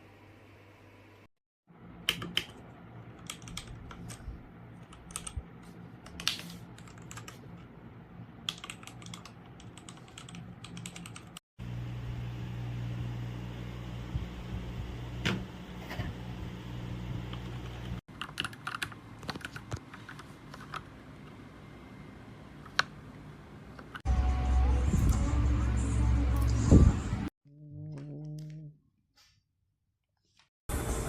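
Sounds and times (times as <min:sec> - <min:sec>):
mechanical keyboard typing: 0:03.2 - 0:04.2, 0:04.9 - 0:05.4, 0:06.0 - 0:07.4, 0:08.5 - 0:11.4, 0:17.5 - 0:20.9.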